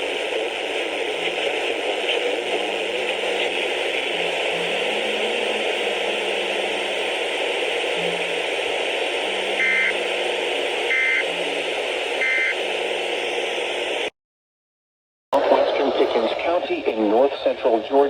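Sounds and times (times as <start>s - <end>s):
radio static hiss: 0.0s - 14.1s, 15.4s - 18.0s
digital data bursts: 9.6s - 10.0s.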